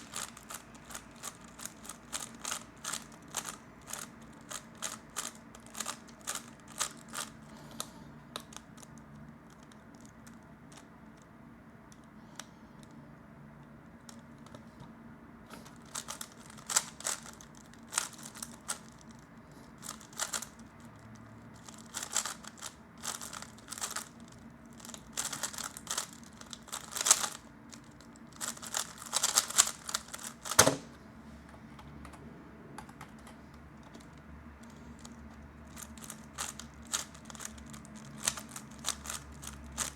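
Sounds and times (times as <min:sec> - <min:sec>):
plastic puzzle cube clicking: 0:00.0 - 0:07.3, 0:15.7 - 0:19.2, 0:19.8 - 0:21.0, 0:21.6 - 0:30.9, 0:35.0 - 0:39.9.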